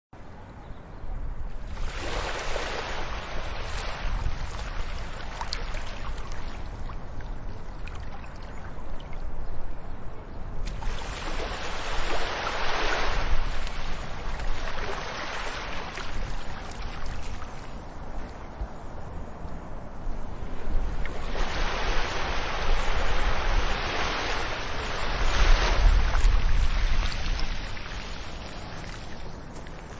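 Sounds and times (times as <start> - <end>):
ocean waves surging: 10.8 - 17.6, 20.4 - 29.1.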